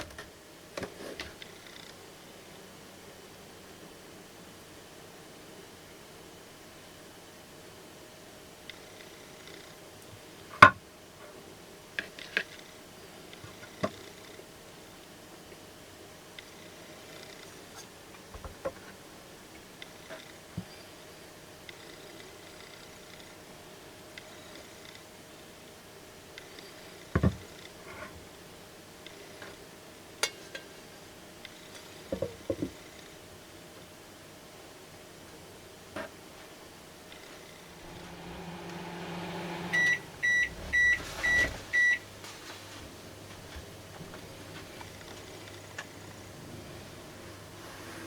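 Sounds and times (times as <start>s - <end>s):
faint steady hum: 36.0s - 48.0s.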